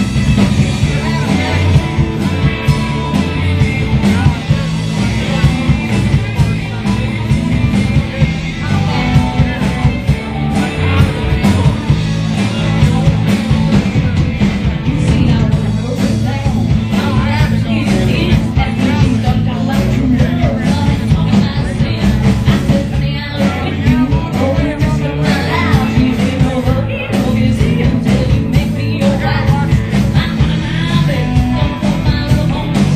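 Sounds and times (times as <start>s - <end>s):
live rock band playing: 0.0s - 32.9s.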